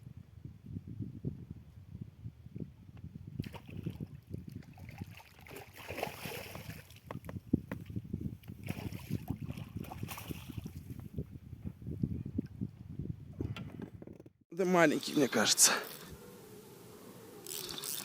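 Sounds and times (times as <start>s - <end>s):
water lapping against boat: 3.4s - 11.0s.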